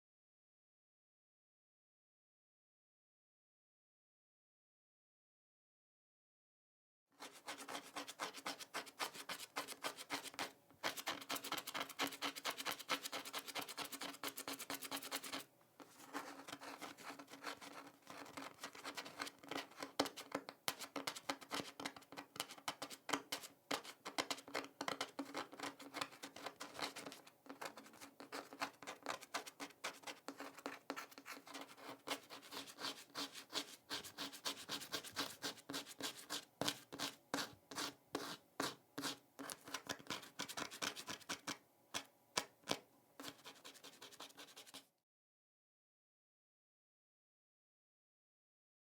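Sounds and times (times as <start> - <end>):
scratching on hard surface: 7.2 - 44.8.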